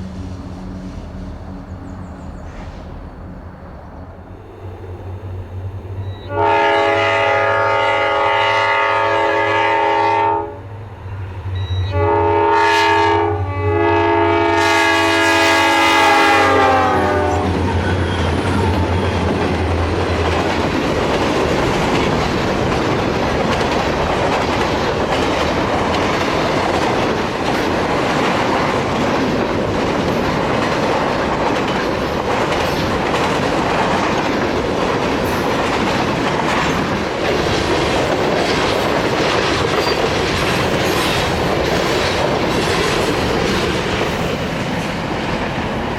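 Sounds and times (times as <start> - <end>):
diesel locomotive engine drone: 0.0 - 45.9
train air horn: 6.1 - 10.6, 11.7 - 18.4
train wheels clattering on rails: 16.4 - 45.9.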